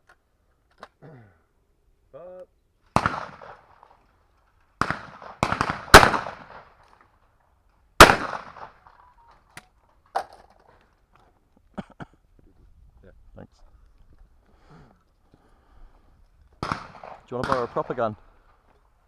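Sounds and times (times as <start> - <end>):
shotgun shots: 3.0 - 3.8, 4.8 - 6.7, 8.0 - 8.8, 16.6 - 18.1.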